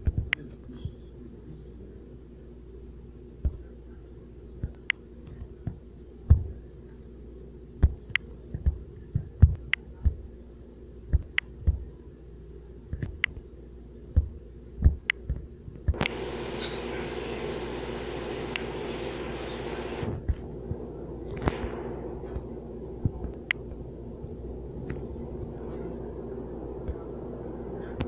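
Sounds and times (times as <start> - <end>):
low background hum: 0.0 - 28.0
sharp clicks: 14.9 - 16.2.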